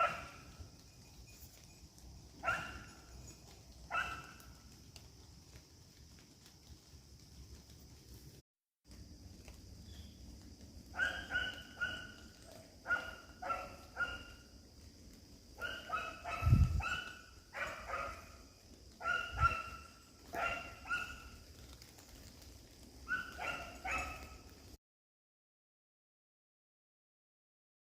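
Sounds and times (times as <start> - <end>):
puppy barking: 0.0 - 0.5, 2.4 - 3.0, 3.9 - 4.4, 10.9 - 14.4, 15.6 - 18.4, 19.0 - 21.3, 23.1 - 24.4.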